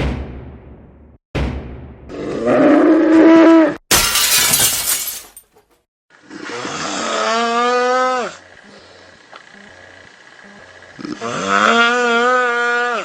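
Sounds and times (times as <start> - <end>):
loud droning snoring: 6.2 - 8.8, 9.5 - 13.0.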